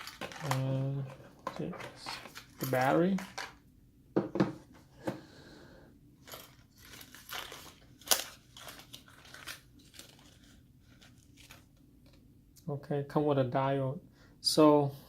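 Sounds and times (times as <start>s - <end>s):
plastic crinkling: 0.0s - 3.5s, 6.3s - 11.7s.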